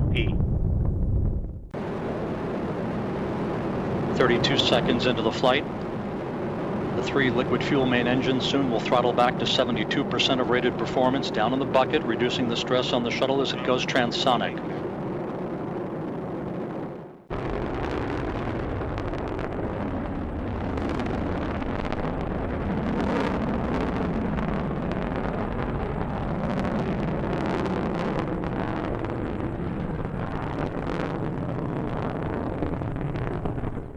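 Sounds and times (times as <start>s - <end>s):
rocket engines rumbling and crackling: 0.0s - 33.9s.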